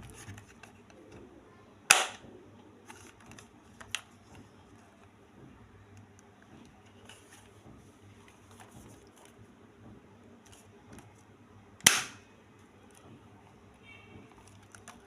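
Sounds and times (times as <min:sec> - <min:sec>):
pistol handling clicks: 0:11.8 - 0:12.2.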